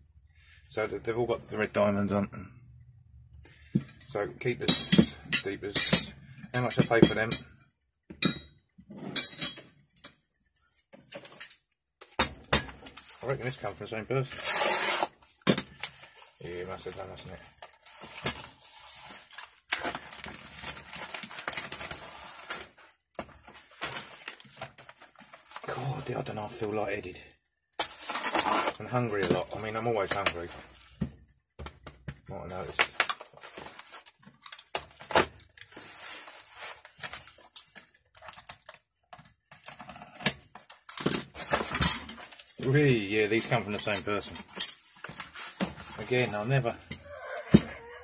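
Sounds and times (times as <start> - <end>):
packaging rustling: 15.7 - 25.9, 32.6 - 39.9.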